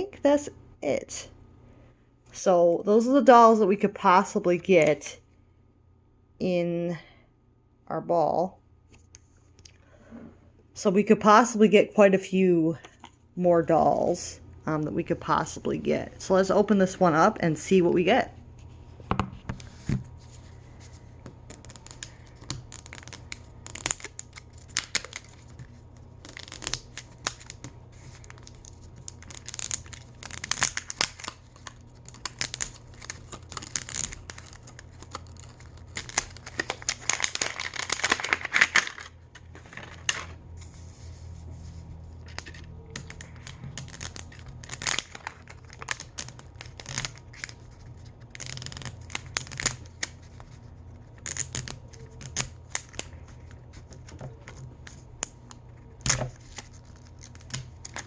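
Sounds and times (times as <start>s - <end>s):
plastic packaging tearing: 21.4s - 40.4s, 42.2s - 50.4s.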